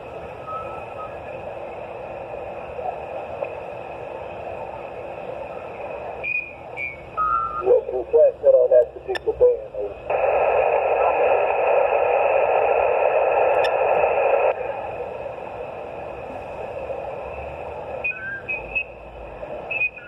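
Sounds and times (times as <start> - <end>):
radio receiver hiss: 0.0 - 20.0
steady radio tones: 0.0 - 20.0
faint garbled radio voice: 7.5 - 15.0.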